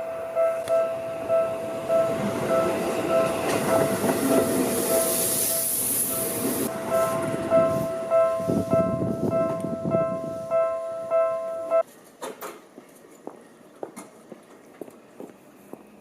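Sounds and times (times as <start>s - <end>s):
crossing bell ringing: 0.0s - 11.8s
electric train passing: 0.0s - 11.8s.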